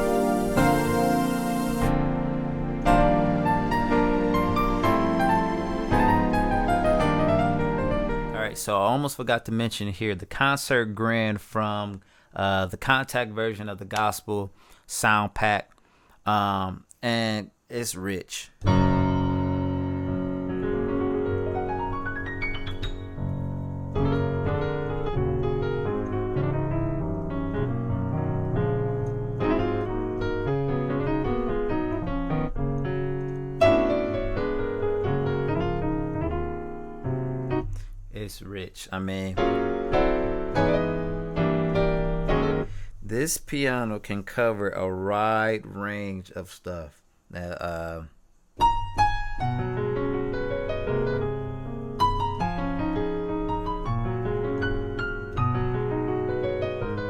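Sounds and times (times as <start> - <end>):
piano chords and melody: 0.0 - 8.6, 18.6 - 38.2, 39.4 - 43.0, 48.6 - 57.0.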